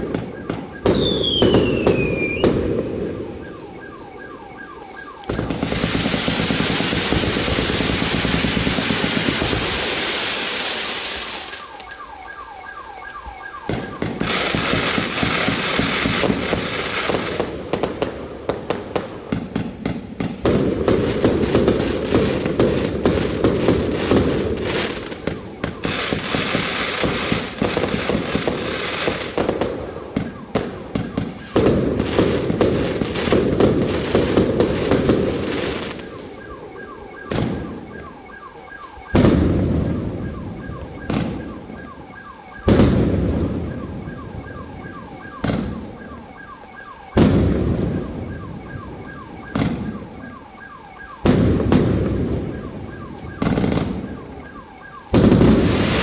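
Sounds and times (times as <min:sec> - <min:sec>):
loud firework bangs: 0:00.0 - 0:03.4, 0:05.3 - 0:11.6, 0:39.1 - 0:40.2, 0:42.7 - 0:43.6, 0:47.2 - 0:48.0, 0:51.2 - 0:52.5, 0:53.4 - 0:54.1, 0:55.1 - 0:56.0
fireworks volley and crackle: 0:00.0 - 0:56.0.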